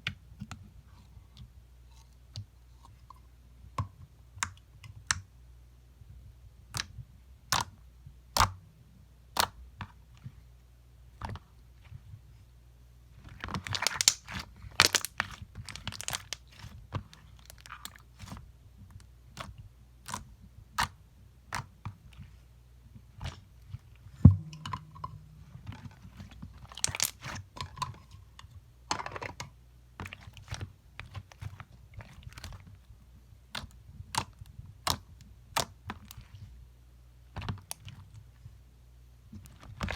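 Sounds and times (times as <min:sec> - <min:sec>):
slime clicking and crackling: 0:13.4 - 0:18.4, 0:25.6 - 0:27.4.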